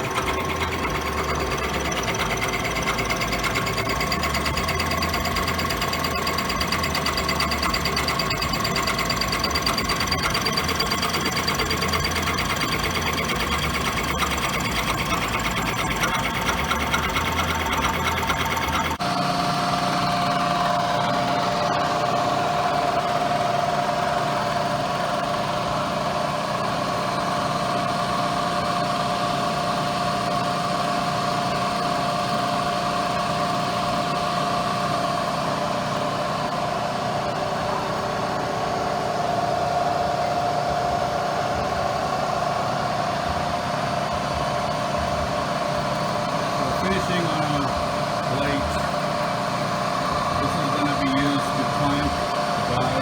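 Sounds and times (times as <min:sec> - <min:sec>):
cutting steel noise: 0:00.0 - 0:19.0
milling machine tone: 0:00.0 - 0:23.9, 0:44.3 - 0:53.0.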